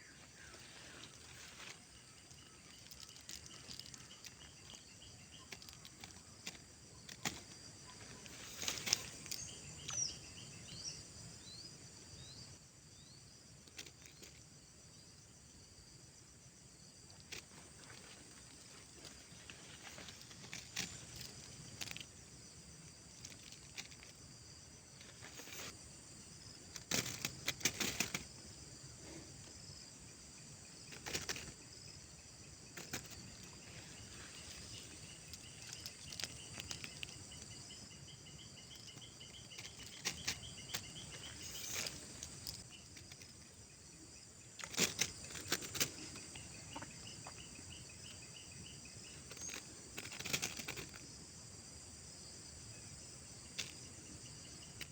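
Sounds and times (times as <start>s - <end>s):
fast pulsed insect trill: 0.0s - 54.9s
insect chorus: 0.0s - 54.9s
clicking and rustling: 5.4s - 9.4s, 17.2s - 22.1s, 26.7s - 28.3s, 30.9s - 31.6s, 32.8s - 33.6s, 34.2s - 37.5s, 38.8s - 43.4s, 44.6s - 46.9s, 49.2s - 51.0s.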